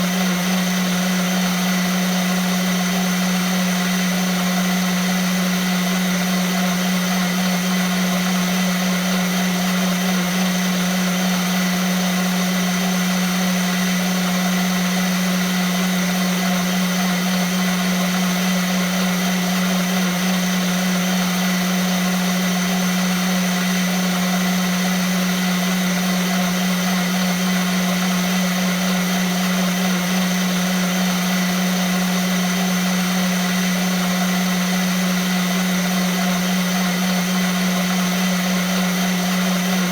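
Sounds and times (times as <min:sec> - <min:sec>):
blender motor running: 0:00.0 - 0:39.9.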